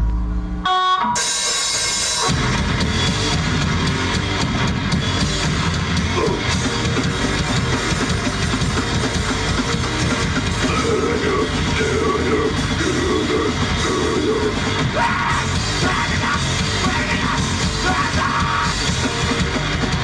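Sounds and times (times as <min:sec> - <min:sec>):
heavy rock band playing: 0:00.0 - 0:20.0.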